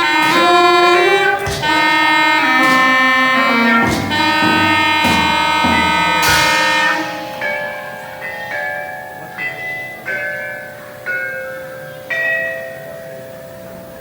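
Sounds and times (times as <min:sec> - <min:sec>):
held low chord: 0:00.0 - 0:11.3
bell-like chime notes: 0:04.1 - 0:10.9.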